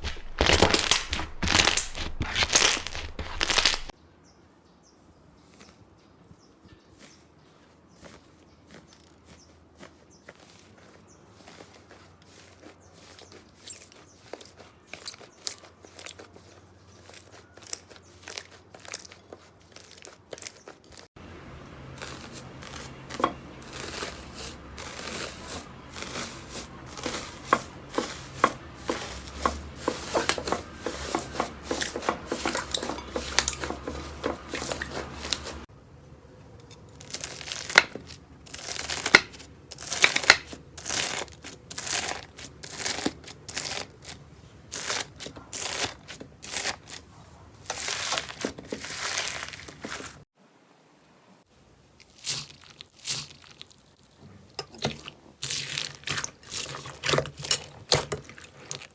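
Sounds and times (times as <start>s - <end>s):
slime crackling and popping: 0.0s - 3.9s, 37.0s - 47.0s, 47.7s - 49.8s, 52.0s - 54.2s.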